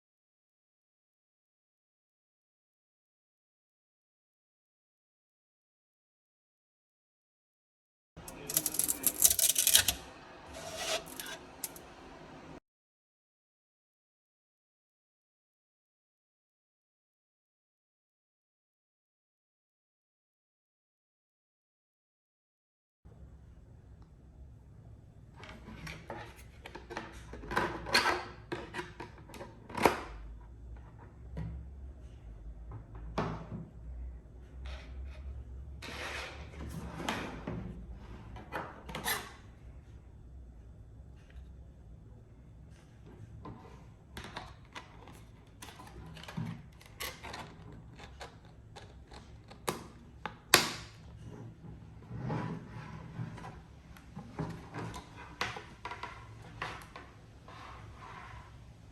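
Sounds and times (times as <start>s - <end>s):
handling clicks and scrapes: 8.2s - 12.0s.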